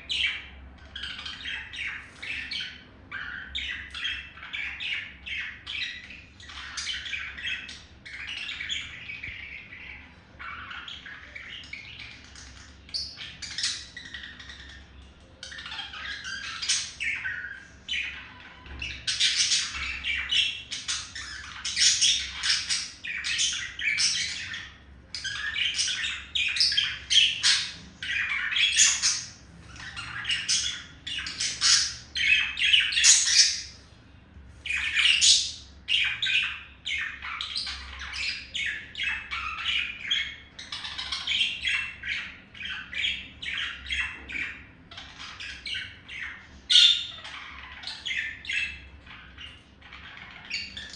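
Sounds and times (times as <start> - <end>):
budgerigar warbling and chirping: 0.0 - 34.0, 34.6 - 50.9.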